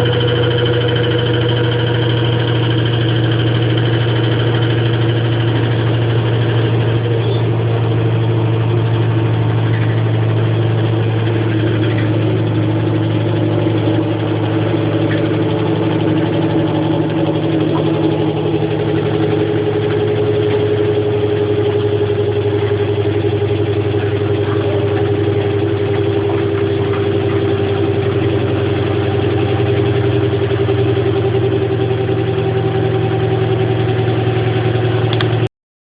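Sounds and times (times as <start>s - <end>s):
washing machine spinning: 0.0s - 35.5s.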